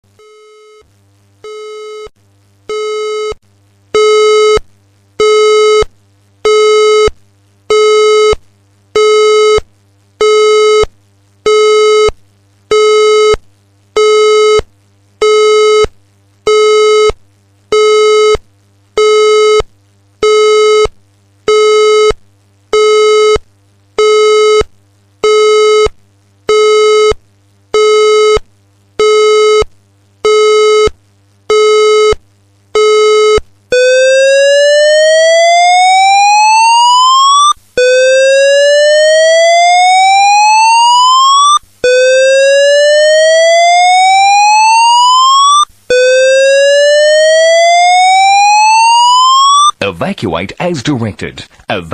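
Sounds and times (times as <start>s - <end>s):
fire alarm buzzy beeps: 0.2s - 2.1s, 2.7s - 3.4s, 4.0s - 4.6s, 5.2s - 7.1s, 7.7s - 8.4s, 9.0s - 9.6s, 10.2s - 10.9s, 11.5s - 13.4s, 14.0s - 15.9s, 16.5s - 18.4s, 19.0s - 20.9s, 21.5s - 23.4s, 24.0s - 28.4s, 29.0s - 30.9s, 31.5s - 32.2s, 32.8s - 49.8s.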